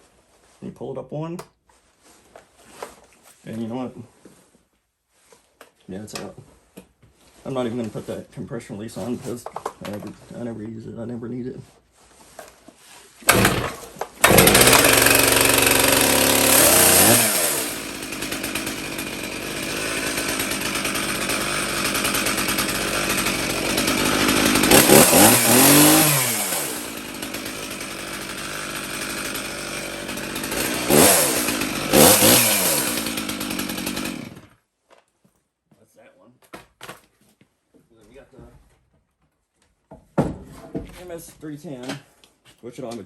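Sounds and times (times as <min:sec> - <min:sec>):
chainsaw idling and revving: 0:13.3 - 0:34.6.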